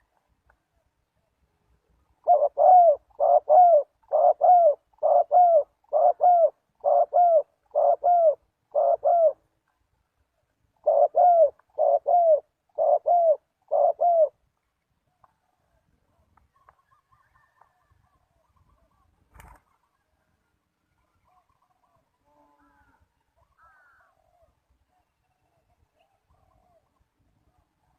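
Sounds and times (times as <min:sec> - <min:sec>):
dove cooing: 0:02.2 - 0:09.4, 0:10.8 - 0:14.4, 0:26.0 - 0:26.9.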